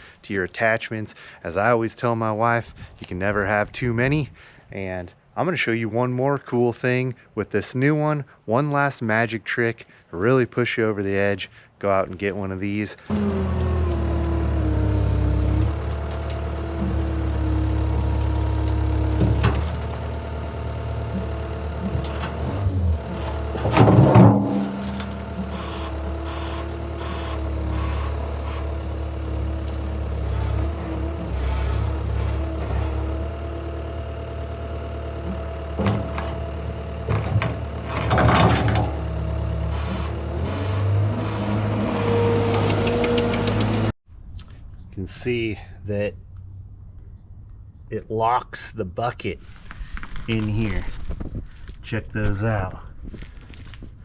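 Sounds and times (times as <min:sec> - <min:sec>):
metal clanking: 0:13.1 - 0:33.0, 0:35.3 - 0:41.0
loader engine running: 0:13.1 - 0:44.0.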